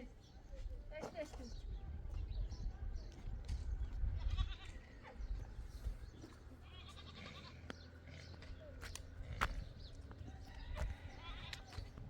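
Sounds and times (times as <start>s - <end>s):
sheep bleating: 4.2s - 4.7s, 6.6s - 7.6s.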